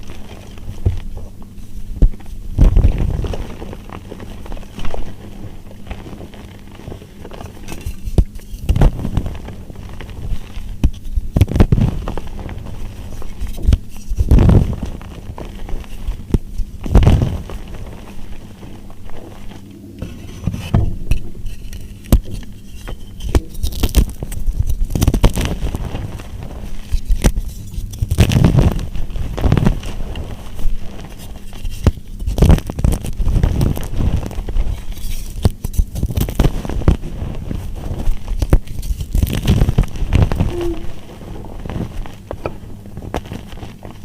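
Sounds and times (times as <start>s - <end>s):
dry soap crackling and crunching: 0.0s - 44.0s.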